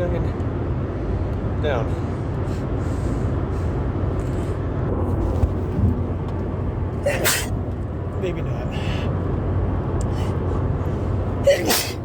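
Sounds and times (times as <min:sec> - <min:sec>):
car road and engine noise: 0:00.0 - 0:12.0
person sneezing: 0:07.0 - 0:07.5, 0:11.4 - 0:12.0.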